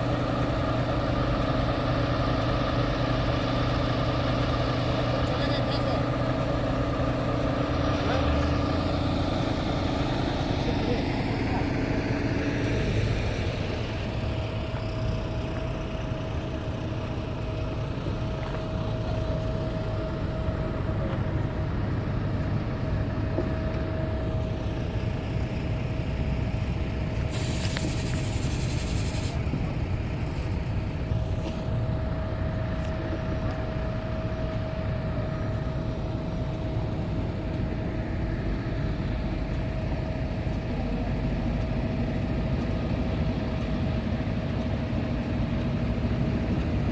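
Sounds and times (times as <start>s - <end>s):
heavy engine whining and rumbling: 0.0s - 46.9s
high hissing: 27.2s - 29.4s.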